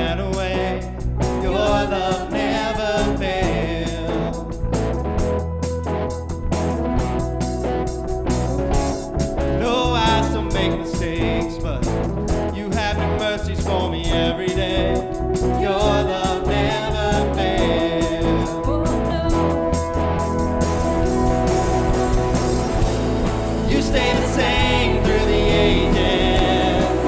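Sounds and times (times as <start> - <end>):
person singing: 0.0 - 4.5, 9.5 - 11.8, 12.5 - 19.9, 23.6 - 27.0
live band playing: 0.0 - 27.0
drum beat: 19.2 - 27.0.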